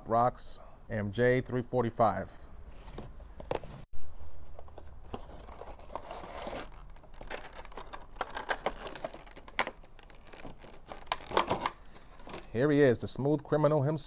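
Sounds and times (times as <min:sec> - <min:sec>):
packaging crinkling and rustling: 0:04.2 - 0:12.6.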